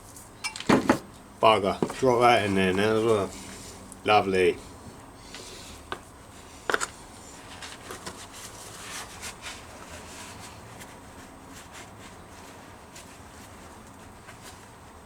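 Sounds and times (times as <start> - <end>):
hand tools clicking and tapping: 0.4 - 1.0.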